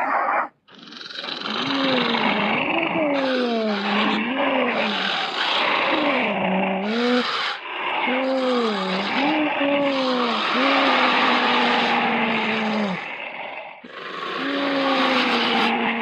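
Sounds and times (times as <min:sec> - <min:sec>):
raspy creature calls: 0:00.0 - 0:16.0.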